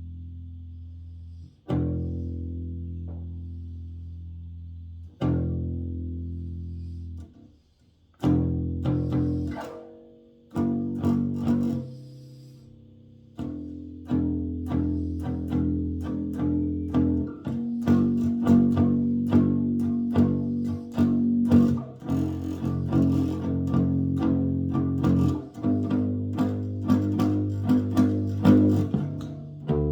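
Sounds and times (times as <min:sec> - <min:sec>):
bass guitar plucked notes: 0:13.4 - 0:29.9.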